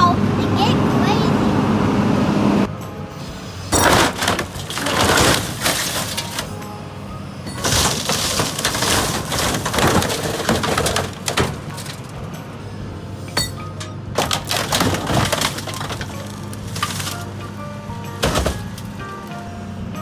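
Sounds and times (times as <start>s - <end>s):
excavator diesel engine running: 0.0s - 20.0s
glass breaking: 3.7s - 6.7s, 7.5s - 12.3s, 13.3s - 17.5s, 18.1s - 19.0s
metal body panels crunching: 3.8s - 6.8s, 7.5s - 12.4s, 13.4s - 19.2s.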